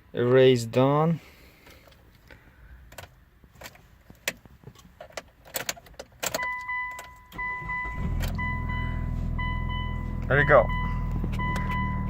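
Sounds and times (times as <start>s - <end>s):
car engine cranking and idling: 1.7s - 12.0s
handling clicks and knocks: 2.9s - 7.2s
dashboard warning chime beeping: 6.4s - 12.0s.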